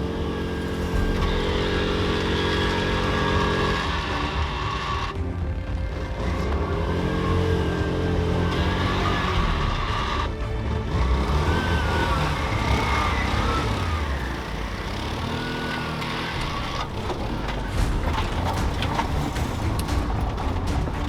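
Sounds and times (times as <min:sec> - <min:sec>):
motorcycle engine rumbling: 0:00.0 - 0:21.0
clattering: 0:11.8 - 0:21.0.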